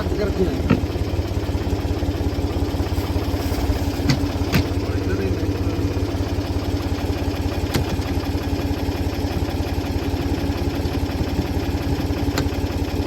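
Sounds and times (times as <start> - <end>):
tractor engine idling: 0.0 - 13.0.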